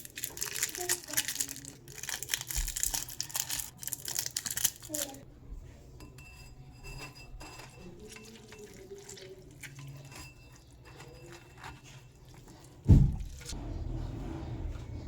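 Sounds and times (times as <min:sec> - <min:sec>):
loud thump: 0:12.9 - 0:13.3.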